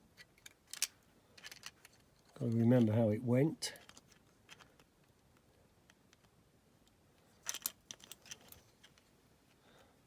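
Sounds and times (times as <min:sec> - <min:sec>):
small model parts clicking: 0:00.2 - 0:02.6, 0:05.8 - 0:09.0.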